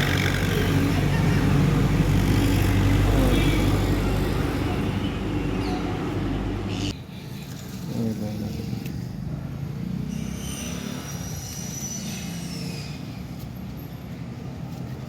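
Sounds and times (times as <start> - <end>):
vehicle engine running: 0.0 - 6.9
traffic noise: 0.0 - 15.0.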